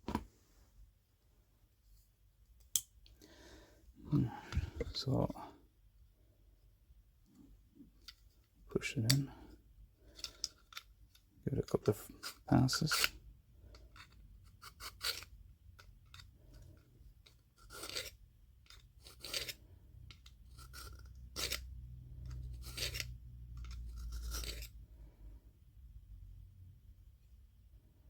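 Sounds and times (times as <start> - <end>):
knife rasping through sharpener: 14.0 - 15.3, 17.6 - 19.6, 20.5 - 21.7, 22.5 - 24.8.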